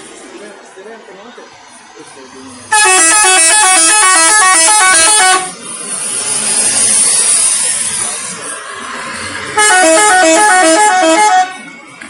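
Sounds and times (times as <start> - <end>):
bus musical air horn: 2.7 - 5.6, 9.5 - 11.7
rushing hissing noise: 5.2 - 9.6.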